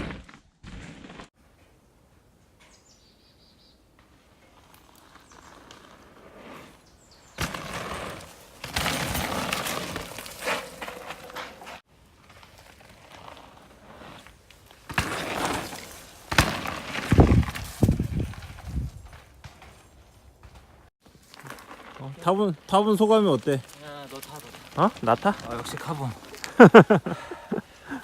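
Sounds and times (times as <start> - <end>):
dirt and gravel crunching: 0.0 - 1.7, 3.6 - 28.0.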